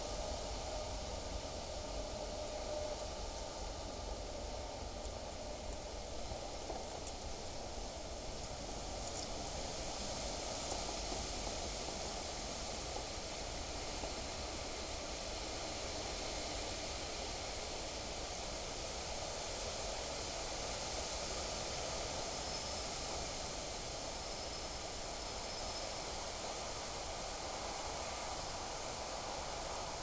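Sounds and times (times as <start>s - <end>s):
steady wind: 0.0s - 21.5s.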